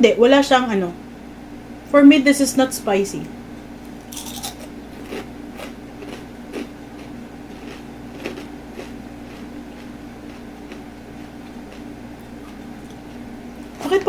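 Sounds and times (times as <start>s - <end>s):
steady low hum: 0.0s - 14.0s
crunchy chewing: 4.0s - 13.8s.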